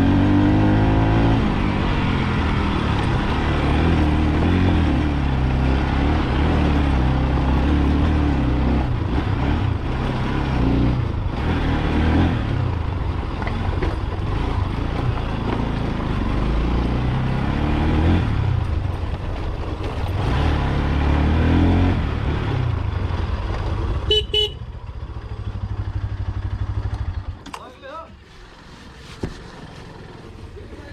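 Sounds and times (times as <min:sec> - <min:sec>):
motorcycle engine revving: 0:00.0 - 0:30.9
horn beeps: 0:24.1 - 0:24.6.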